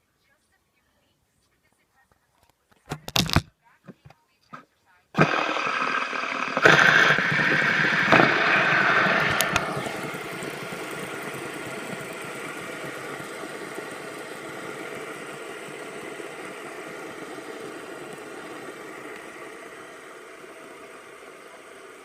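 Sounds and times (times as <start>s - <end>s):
fidget spinner whirring: 5.2s - 22.0s.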